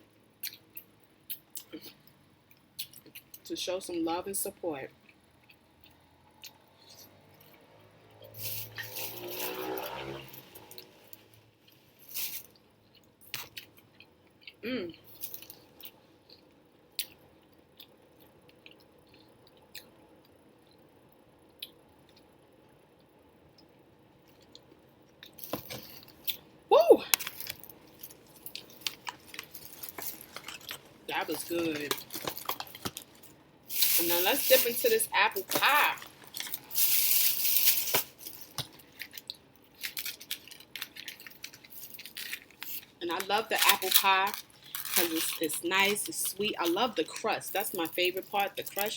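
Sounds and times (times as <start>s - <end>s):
person chewing food: 12.6s - 20.9s, 27.2s - 31.1s
paper packaging crinkling: 27.2s - 46.9s.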